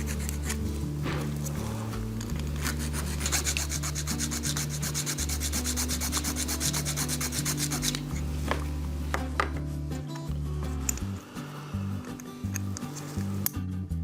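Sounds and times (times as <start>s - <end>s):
hand file rasping on metal: 0.0s - 0.8s, 1.4s - 8.2s.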